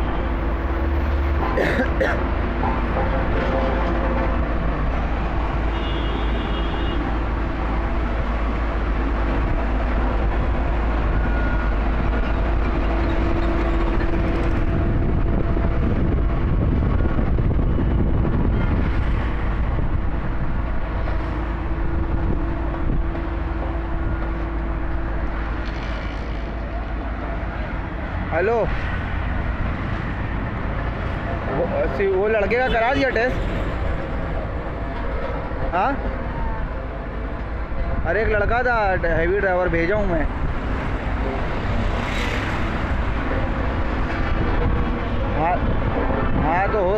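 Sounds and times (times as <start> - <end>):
road roller engine running: 0.0 - 32.6, 33.3 - 46.9.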